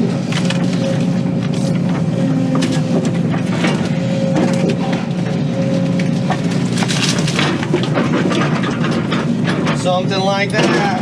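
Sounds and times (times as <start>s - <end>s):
excavator diesel engine running: 0.0s - 11.0s
wood cracking and snapping: 6.2s - 9.7s.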